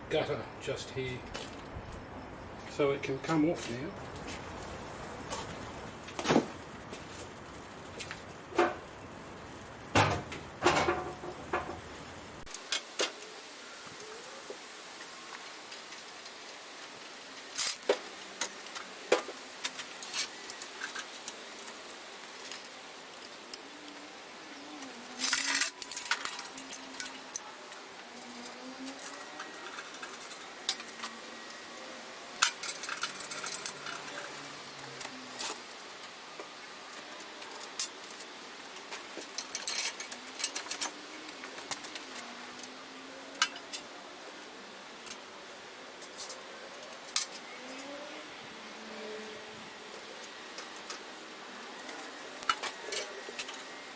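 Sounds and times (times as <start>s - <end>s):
metal parts clicking and clinking: 24.8s - 31.2s, 32.4s - 35.6s, 37.2s - 42.7s.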